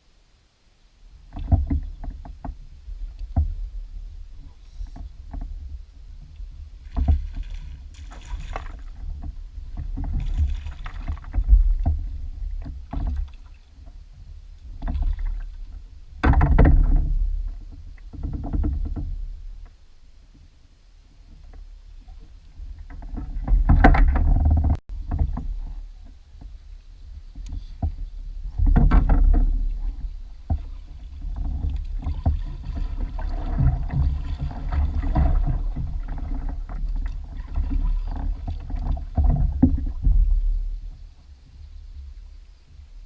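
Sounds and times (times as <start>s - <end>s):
knocks and rustles: 1.3s - 2.6s, 4.8s - 14.0s, 16.2s - 20.4s, 22.6s - 26.6s, 27.3s - 40.7s.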